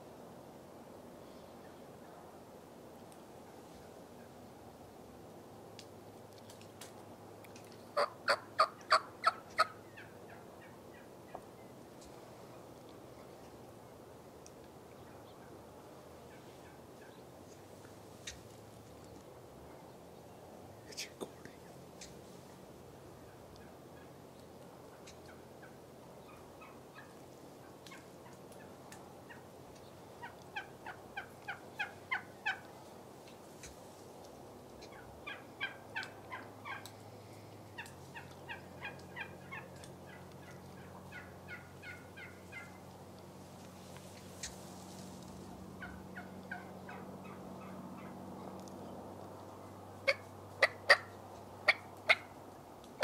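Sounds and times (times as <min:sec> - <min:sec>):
turkey yelping: 0:08.0 - 0:11.4, 0:25.0 - 0:27.2, 0:30.2 - 0:32.7, 0:34.8 - 0:36.9, 0:37.7 - 0:42.8, 0:45.8 - 0:48.2, 0:50.0 - 0:52.4.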